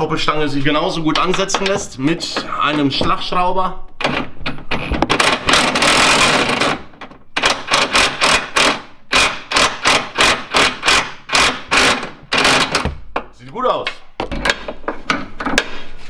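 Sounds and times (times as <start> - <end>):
impact wrench running: 5.0 - 13.0.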